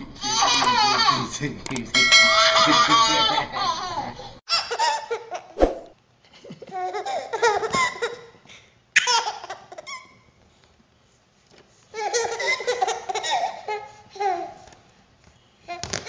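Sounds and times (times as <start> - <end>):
baby laughing: 0.2 - 1.3, 12.0 - 14.6
sharp click: 1.6 - 1.9.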